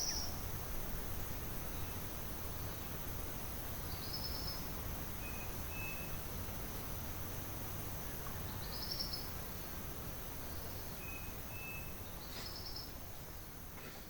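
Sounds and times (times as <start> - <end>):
background hiss: 0.0 - 14.0
high insect hum: 0.0 - 14.0
thin whistled bird notes: 5.2 - 6.2, 10.5 - 12.9.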